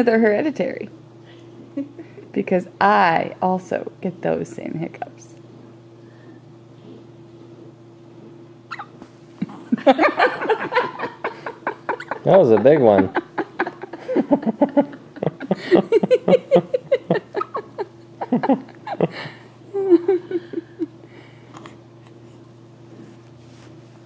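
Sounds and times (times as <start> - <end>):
faint steady hum: 0.0 - 24.0
laughter in bursts: 9.4 - 21.0.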